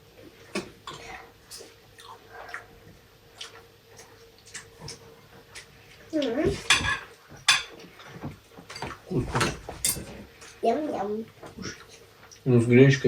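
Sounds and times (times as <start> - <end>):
dishes clinking: 6.5 - 10.2
forks tapping on plates: 6.5 - 10.2.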